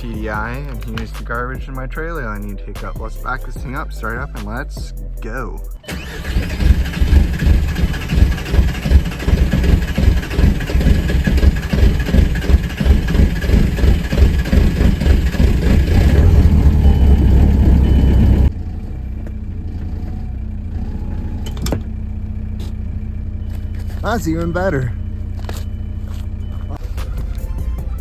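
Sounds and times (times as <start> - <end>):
diesel engine clattering: 5.8 - 28.0.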